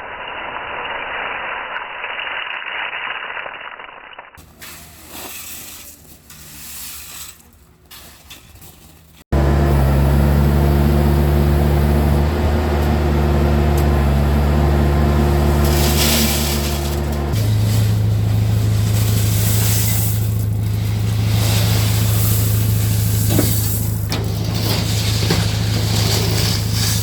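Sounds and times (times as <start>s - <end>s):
skid steer engine running: 9.3s - 27.0s.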